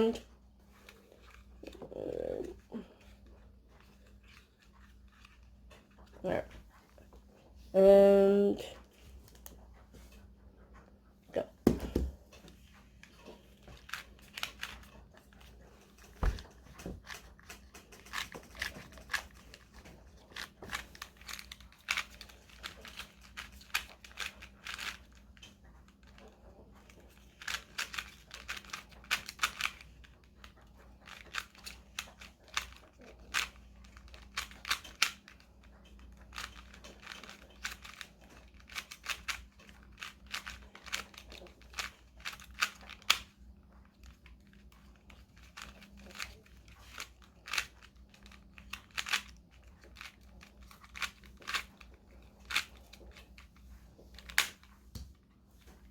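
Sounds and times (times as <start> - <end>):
puzzle cube plastic clicks: 13.0 - 54.7.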